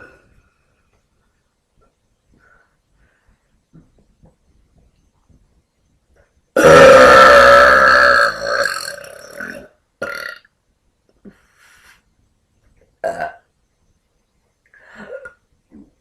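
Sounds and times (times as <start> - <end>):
woman burping: 6.6 - 10.4, 13.0 - 13.4.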